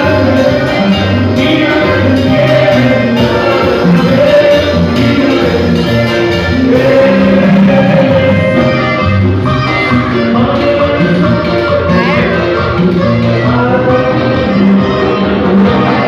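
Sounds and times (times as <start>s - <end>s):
band playing a song: 0.0s - 16.0s
person singing: 0.0s - 16.0s.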